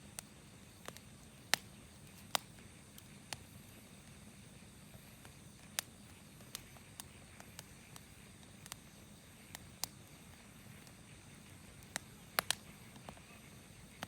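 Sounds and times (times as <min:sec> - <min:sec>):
campfire crackling and popping: 0:00.0 - 0:14.0
soft steady hiss: 0:00.0 - 0:14.0.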